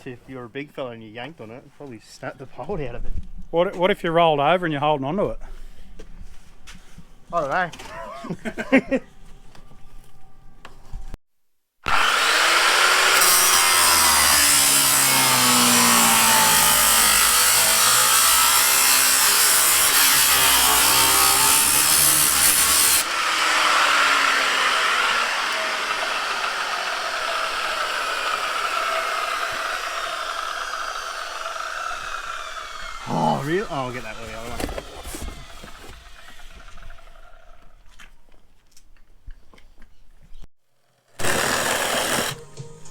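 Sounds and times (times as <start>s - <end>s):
reciprocating saw cutting sheet metal: 11.9s - 37.5s, 41.2s - 42.5s.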